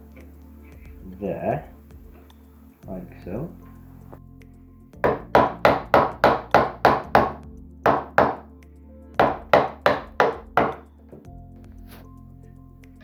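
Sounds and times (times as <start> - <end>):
hammer blows on wood: 5.0 - 8.5, 9.2 - 10.9.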